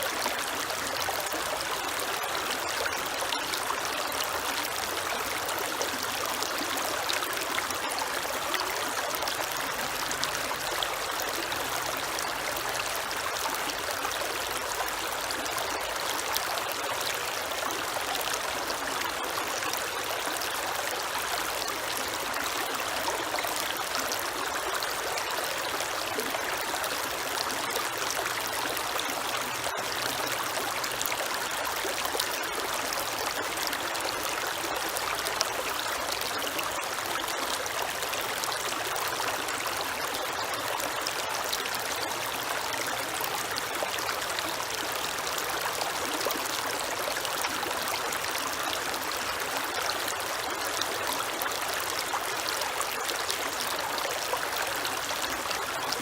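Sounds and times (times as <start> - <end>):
creek water running over rocks: 0.0 - 56.0.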